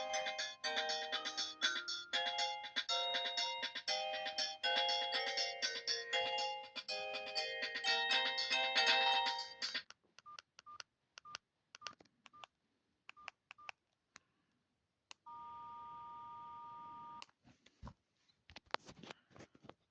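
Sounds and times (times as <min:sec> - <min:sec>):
phone ringtone: 0:00.0 - 0:09.8
keypad clicks with beeps: 0:10.2 - 0:12.5, 0:13.1 - 0:13.8.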